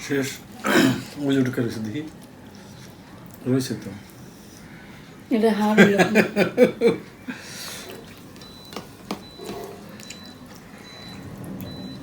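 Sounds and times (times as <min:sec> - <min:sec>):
wet eating sounds: 0:07.3 - 0:11.8.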